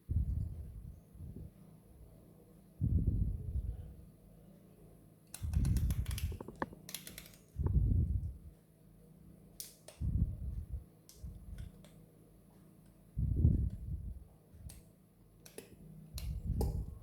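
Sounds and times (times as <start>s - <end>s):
coffee equipment clicks and knocks: 6.2s - 6.8s.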